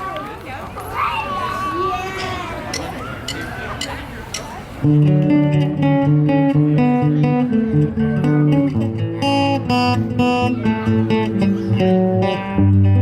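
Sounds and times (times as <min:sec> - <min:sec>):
acoustic guitars playing: 0:02.6 - 0:13.0.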